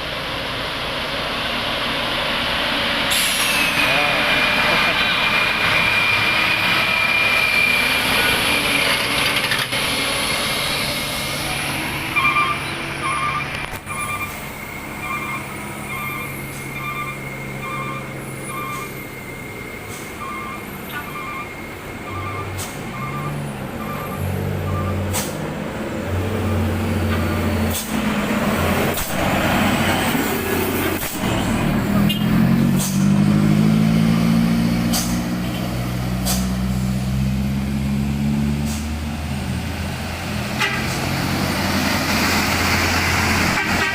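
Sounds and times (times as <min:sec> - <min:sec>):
truck engine idling and revving: 0:00.0 - 0:43.9
reversing beeper: 0:03.2 - 0:09.1, 0:11.4 - 0:25.1, 0:26.3 - 0:27.6.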